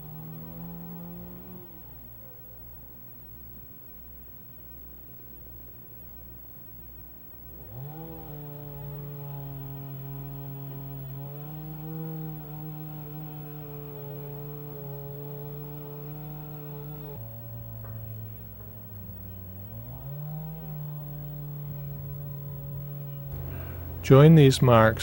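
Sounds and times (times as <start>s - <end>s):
chainsaw revving: 0.0s - 2.1s, 7.5s - 25.0s.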